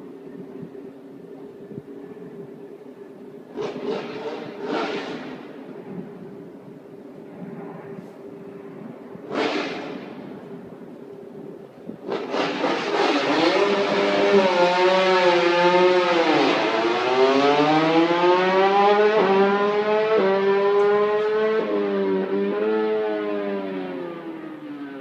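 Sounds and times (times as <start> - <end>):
racing motorcycle engine revving: 3.5 - 6.0, 9.2 - 10.4, 12.0 - 24.8.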